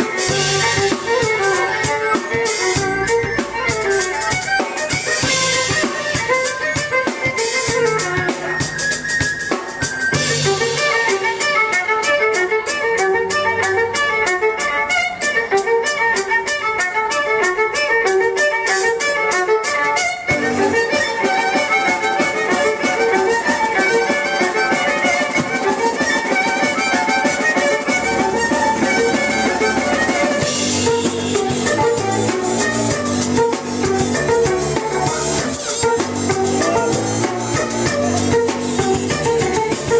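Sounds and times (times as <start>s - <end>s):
amplified violin melody: 0.0s - 39.9s
drums beating: 0.0s - 39.9s
keyboard: 20.3s - 39.9s.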